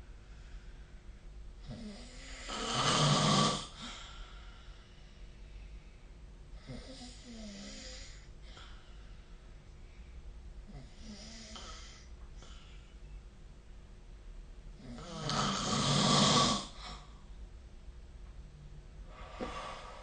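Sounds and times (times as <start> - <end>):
person snoring: 1.6 - 3.9, 14.8 - 17.1
soft wavering breath: 19.0 - 20.0.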